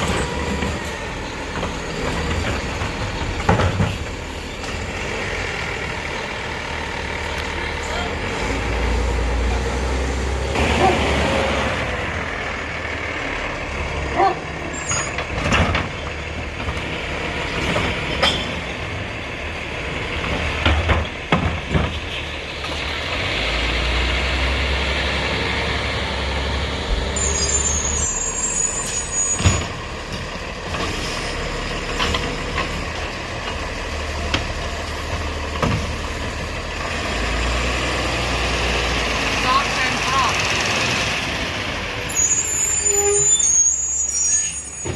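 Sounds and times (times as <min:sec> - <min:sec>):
truck engine rumbling: 0:00.0 - 0:44.9
short high squeal: 0:27.1 - 0:29.7, 0:42.0 - 0:44.9.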